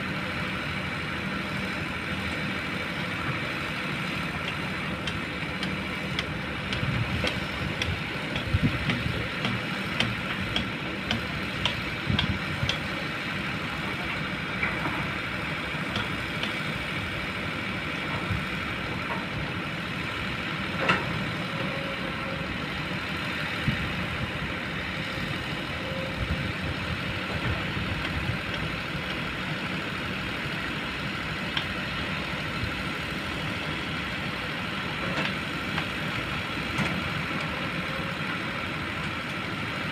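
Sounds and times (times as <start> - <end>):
diesel engine running: 0.0 - 39.9
excavator clanks and knocks: 3.2 - 17.1, 18.0 - 19.6, 20.7 - 22.4, 27.2 - 29.5, 34.9 - 39.5.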